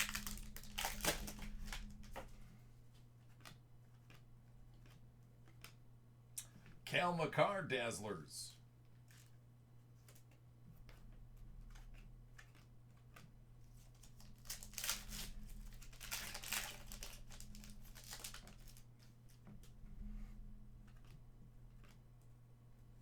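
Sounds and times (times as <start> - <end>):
foil wrappers crinkling and tearing: 0.0 - 2.3, 13.8 - 19.1.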